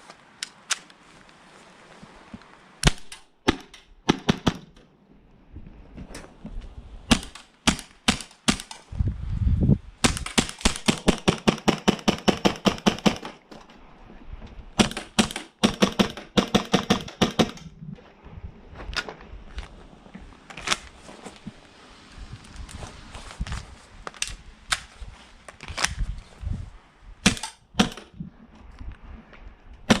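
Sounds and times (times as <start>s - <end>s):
airsoft pistol shots: 7.1s - 8.8s, 27.2s - 28.1s.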